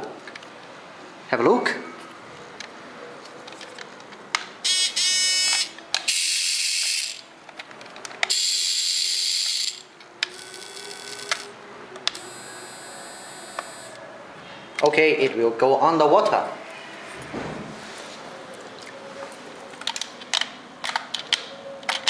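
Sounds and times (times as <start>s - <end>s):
small electric motors whirring: 12.1s - 14.0s.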